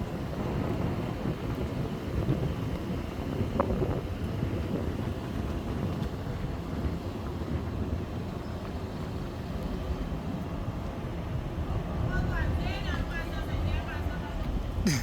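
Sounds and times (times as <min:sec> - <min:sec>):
vehicle engine and road noise: 0:00.0 - 0:15.0.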